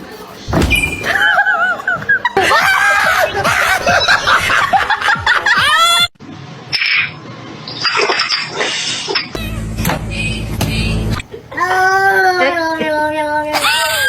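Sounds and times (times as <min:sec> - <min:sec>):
high-pitched laughter: 0:01.3 - 0:06.1, 0:11.3 - 0:14.0.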